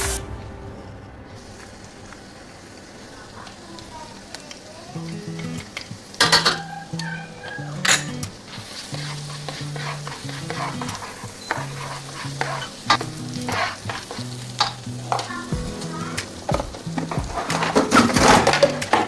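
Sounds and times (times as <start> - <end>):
garlic sizzling in hot oil: 1.5 - 19.0
utensil scraping pan: 8.8 - 14.2.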